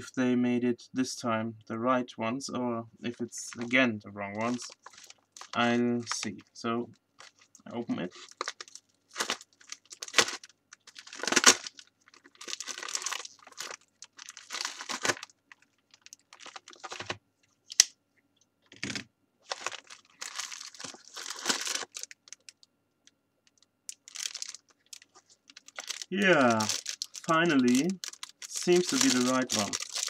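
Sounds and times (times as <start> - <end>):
packaging crinkling: 4.4 - 6.4, 7.2 - 17.9, 18.7 - 22.7, 23.4 - 30.0
envelope tearing: 8.1 - 15.3, 16.0 - 17.2, 19.4 - 22.4, 24.0 - 30.0.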